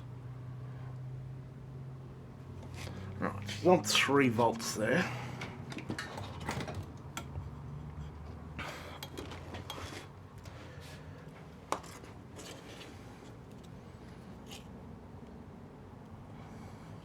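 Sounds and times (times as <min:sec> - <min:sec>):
wires and tools handled: 0:05.4 - 0:10.6.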